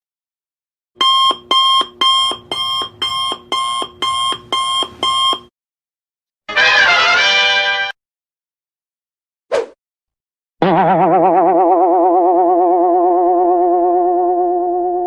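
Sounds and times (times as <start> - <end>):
alarm clock electronic beeps: 1.0 - 5.5.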